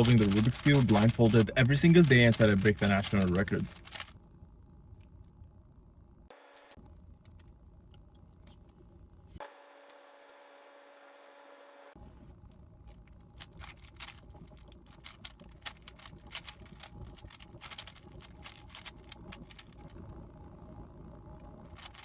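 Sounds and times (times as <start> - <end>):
speed cube plastic clicking: 0.0 - 4.1, 13.4 - 20.0, 21.7 - 22.0
faint steady hum: 0.0 - 22.0.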